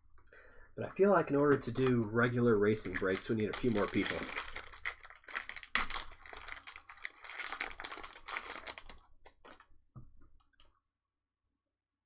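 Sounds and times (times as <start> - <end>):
cards being handled: 1.5 - 9.6
card wrappers crinkling: 1.5 - 9.7.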